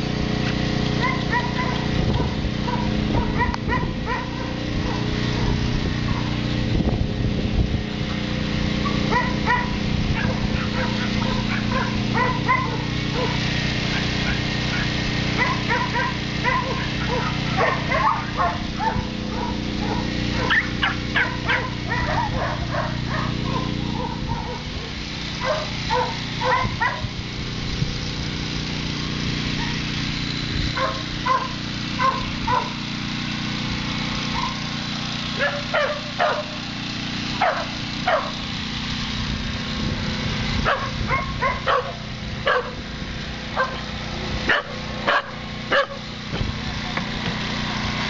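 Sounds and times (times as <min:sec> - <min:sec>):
steady low hum: 0:00.0 - 0:48.0
dogs barking and yipping: 0:00.4 - 0:06.4, 0:08.1 - 0:27.2, 0:29.5 - 0:32.9, 0:34.2 - 0:38.5, 0:40.6 - 0:46.1.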